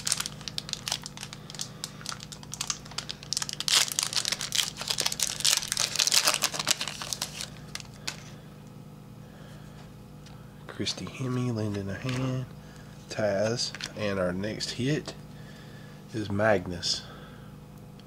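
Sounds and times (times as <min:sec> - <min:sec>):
foil wrapper crinkling: 0:00.0 - 0:08.3.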